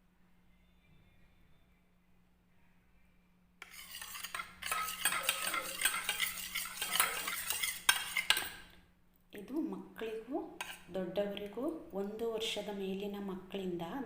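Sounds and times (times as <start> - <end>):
spoon stirring and clinking: 3.6 - 8.7, 10.6 - 10.9.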